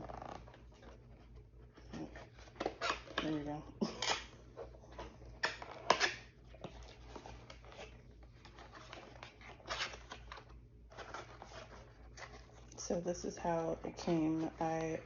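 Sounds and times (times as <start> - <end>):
packaging rustling: 4.4 - 12.8.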